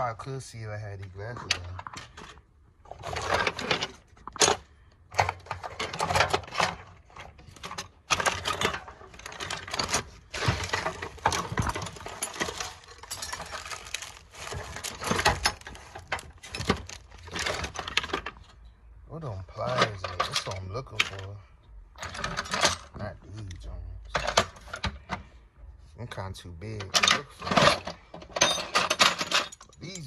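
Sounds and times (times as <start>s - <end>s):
metal hand tools clinking: 11.1s - 14.0s.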